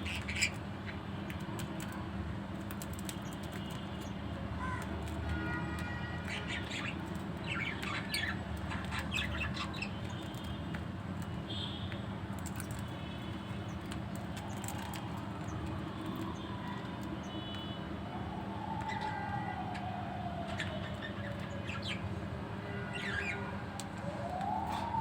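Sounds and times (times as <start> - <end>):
budgerigars chirping and squawking: 0.0 - 0.6, 6.2 - 10.4, 20.5 - 22.0, 22.9 - 23.5.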